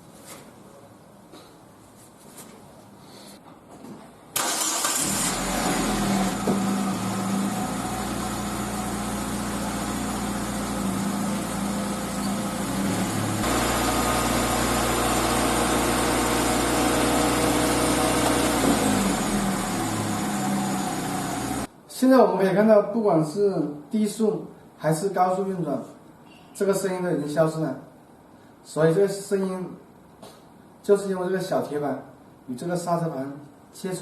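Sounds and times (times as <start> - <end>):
car engine running: 5.0 - 21.7.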